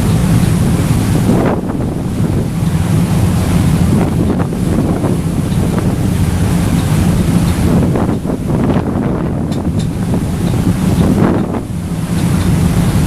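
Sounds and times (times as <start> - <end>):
ferry engine drone: 0.0 - 13.0
water rushing past hull: 0.0 - 13.0
wind buffeting microphone: 0.0 - 13.0.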